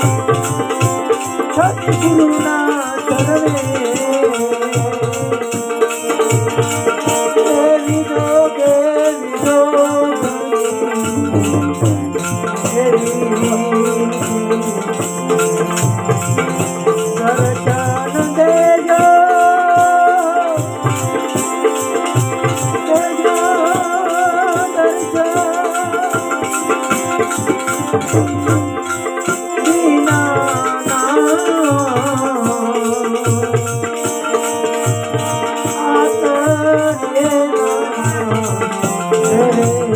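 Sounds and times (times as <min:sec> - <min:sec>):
hand percussion rattling: 0:00.0 - 0:39.9
instrumental melody: 0:00.0 - 0:39.9
drum beat: 0:11.0 - 0:18.1, 0:26.9 - 0:30.4.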